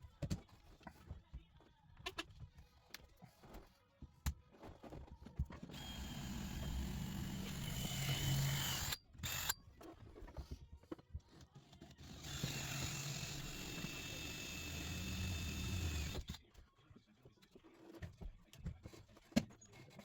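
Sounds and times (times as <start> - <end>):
tool clicks and ticks: 5.7 - 9.6
power driver whining: 5.8 - 9.5, 12.2 - 16.3.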